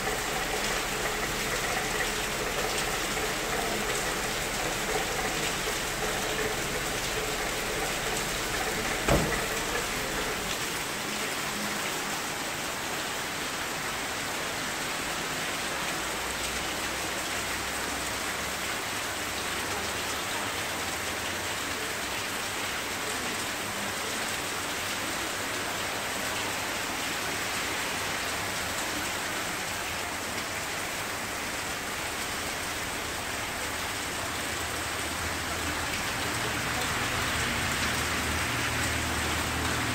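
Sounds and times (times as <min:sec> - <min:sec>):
heavy rain: 0:00.0 - 0:39.9
sharp knock: 0:09.1 - 0:09.4.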